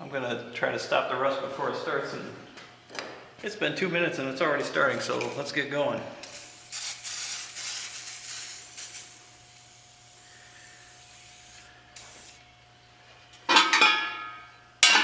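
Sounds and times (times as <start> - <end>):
aerosol can spraying: 6.2 - 12.4
metallic clank ringing: 13.5 - 15.0.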